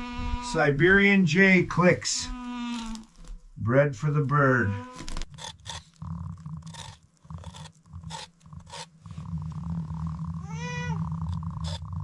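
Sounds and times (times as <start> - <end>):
cat purring: 0.0 - 12.0
short scratchy noises: 0.0 - 12.0
cat meowing: 4.6 - 5.2, 10.4 - 11.0.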